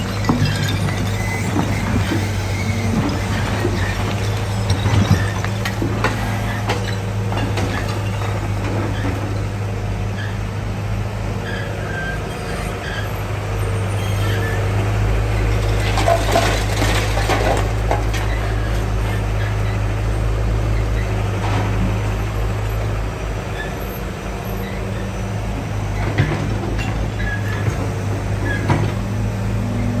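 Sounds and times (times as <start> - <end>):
knocks and clatter: 0.0 - 9.4
excavator humming: 0.0 - 30.0.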